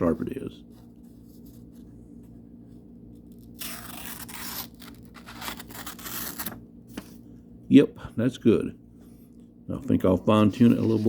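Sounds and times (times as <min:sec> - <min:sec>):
knife slicing paper: 0:03.4 - 0:06.6.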